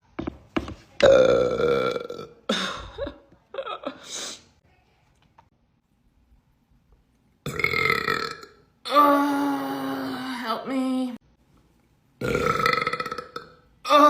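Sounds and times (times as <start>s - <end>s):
woman burping: 1.0s - 3.2s, 7.5s - 10.3s, 12.2s - 14.0s.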